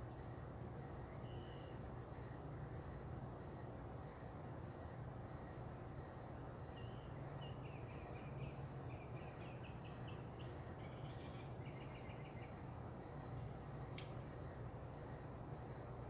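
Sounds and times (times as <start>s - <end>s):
steady low hum: 0.0s - 16.0s
songbird chirping: 0.8s - 1.8s, 6.6s - 14.2s.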